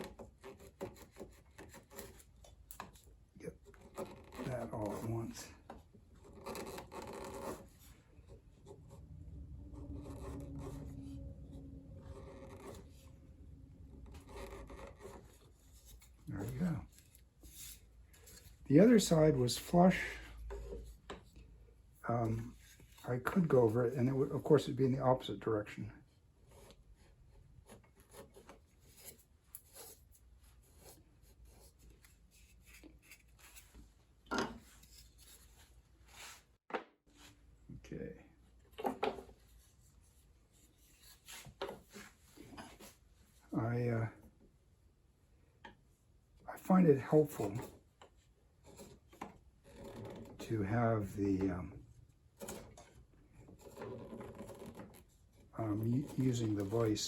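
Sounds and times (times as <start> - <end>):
chisel scraping wood: 0.0 - 21.5, 26.4 - 33.8, 40.5 - 43.0, 47.1 - 50.5, 52.4 - 57.0.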